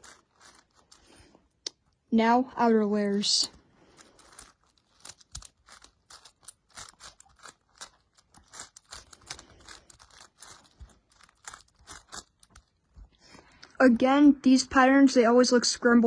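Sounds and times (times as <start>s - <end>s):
puzzle cube clicking: 4.2s - 12.7s.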